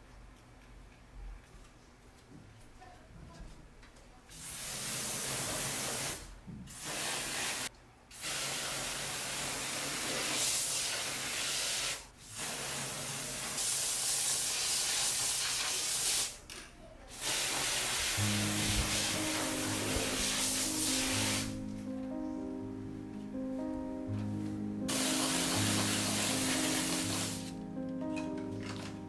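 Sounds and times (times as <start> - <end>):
spraying hiss: 17.1 - 21.6, 24.9 - 27.6.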